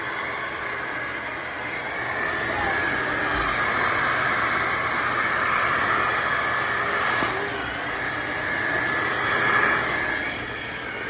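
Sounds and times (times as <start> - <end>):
wet-dry vacuum mop running: 0.0 - 11.0.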